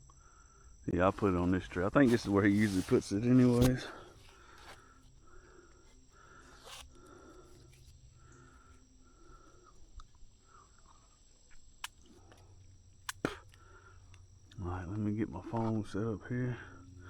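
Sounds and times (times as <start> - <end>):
insects droning: 0.0 - 17.0
low pulsing insect call: 0.0 - 17.0
sharp clicks: 11.5 - 14.2.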